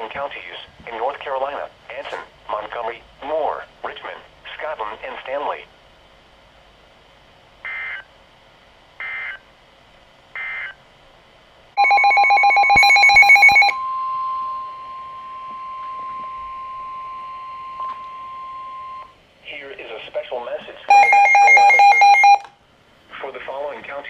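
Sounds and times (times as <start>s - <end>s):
steady warning alarm tone: 7.6s - 8.1s, 9.0s - 9.4s, 10.4s - 10.8s, 11.8s - 19.2s, 20.9s - 22.5s
rapid alert beeping: 11.8s - 13.8s, 20.9s - 22.4s.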